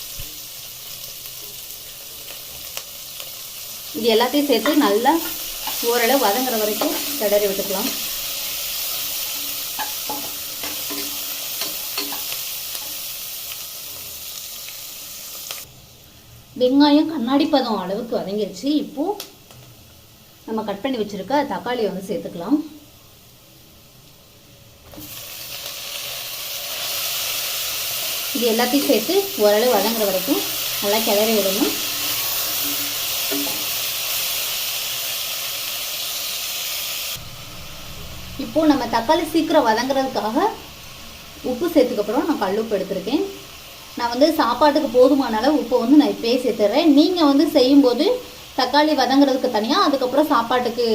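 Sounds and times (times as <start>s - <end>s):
onions sizzling in hot oil: 0.0s - 50.9s
spoon clinking against pot: 9.8s - 12.3s.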